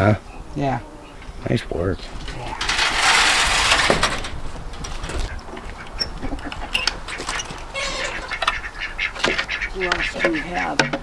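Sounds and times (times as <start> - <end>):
farmyard rustling and clicking: 0.6 - 11.0
loud hissing rustle: 1.2 - 5.4
ducks quacking: 5.6 - 11.0.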